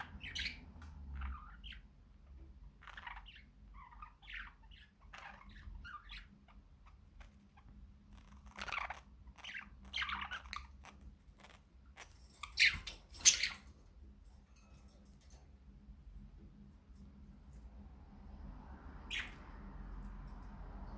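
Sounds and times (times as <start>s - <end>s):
budgerigars chirping: 0.0s - 1.9s, 2.8s - 13.8s, 19.0s - 19.6s.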